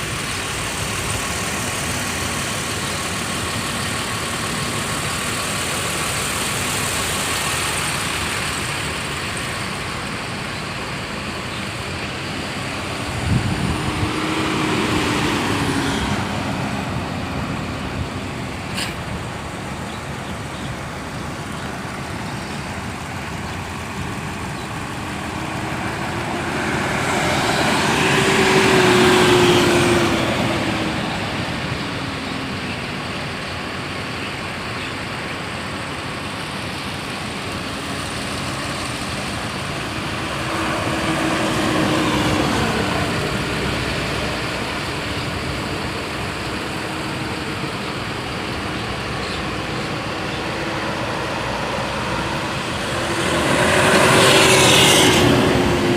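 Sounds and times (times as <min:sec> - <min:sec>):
road noise: 0:00.0 - 0:55.9
vehicle engine running: 0:00.0 - 0:55.9.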